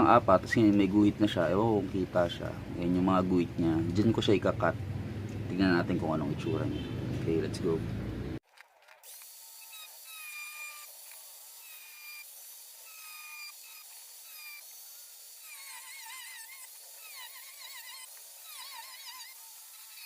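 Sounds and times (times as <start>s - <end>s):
tool squealing cutting metal: 9.6s - 20.0s.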